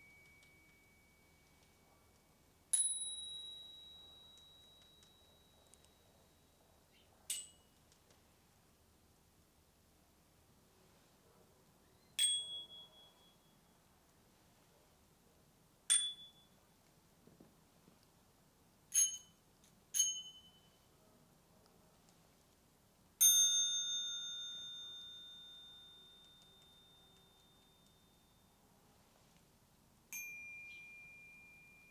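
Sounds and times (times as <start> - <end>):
bicycle bell dings: 2.7 - 6.3, 7.3 - 7.7, 12.2 - 13.7, 15.9 - 16.6, 18.9 - 19.4, 20.0 - 20.9, 23.2 - 28.6, 30.1 - 31.9.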